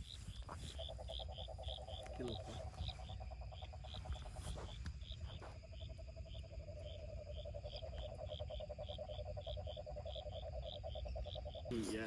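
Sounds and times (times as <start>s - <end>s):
high insect chirps: 0.0s - 12.0s
insects trilling: 0.0s - 12.0s.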